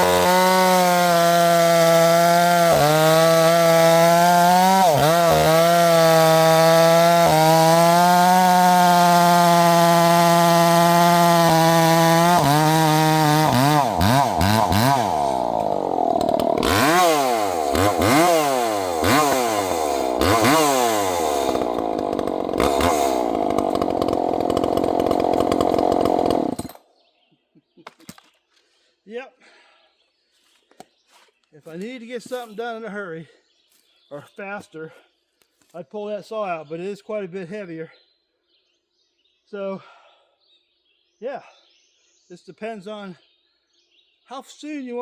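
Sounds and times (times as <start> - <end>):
chainsaw cutting wood: 0.0 - 26.9.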